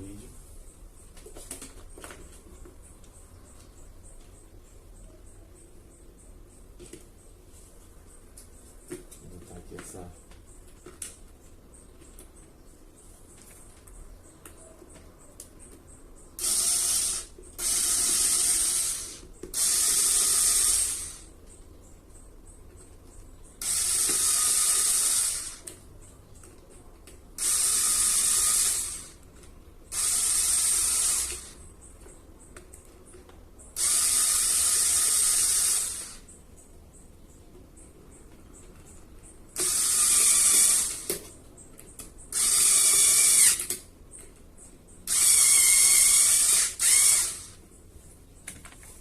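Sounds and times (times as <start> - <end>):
electric screwdriver whirring: 16.4 - 21.3, 23.6 - 25.6, 27.4 - 29.2, 29.9 - 31.6, 33.8 - 36.2, 39.6 - 41.2, 42.3 - 43.8, 45.1 - 47.6.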